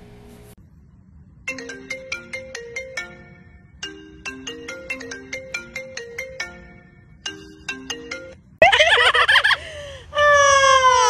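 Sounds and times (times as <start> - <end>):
marimba phone ringtone: 1.5 - 8.5.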